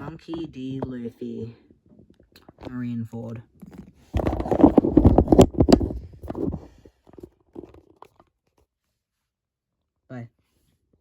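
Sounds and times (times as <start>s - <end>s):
plastic rustling and clicking: 3.5s - 8.3s.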